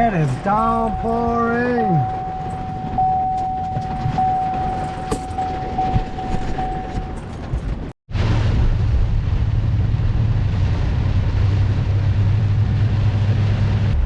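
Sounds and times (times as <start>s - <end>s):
steady high tone: 0.3s - 7.2s.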